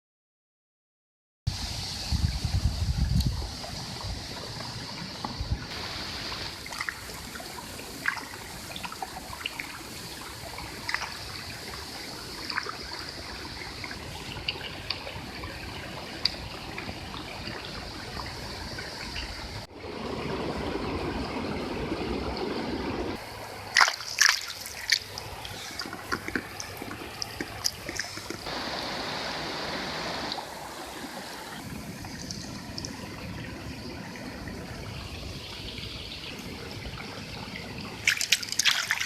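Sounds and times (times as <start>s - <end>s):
stream trickling over stones: 1.5s - 39.0s
sharp splashes: 23.2s - 33.0s, 38.0s - 39.0s.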